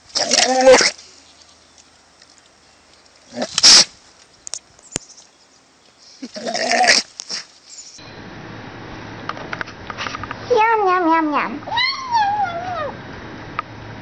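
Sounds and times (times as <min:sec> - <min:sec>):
animal calling harshly: 0:00.1 - 0:01.0, 0:03.3 - 0:03.9, 0:06.2 - 0:07.5.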